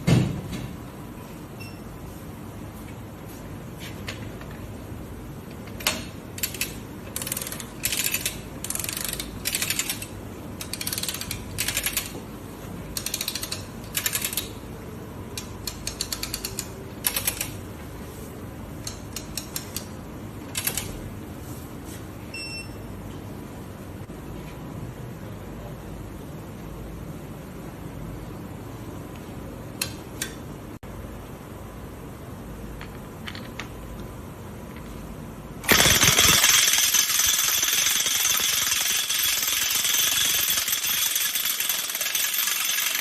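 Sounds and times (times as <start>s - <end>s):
steady background hum: 0.0s - 43.0s
pneumatic impact wrench hammering: 35.6s - 43.0s.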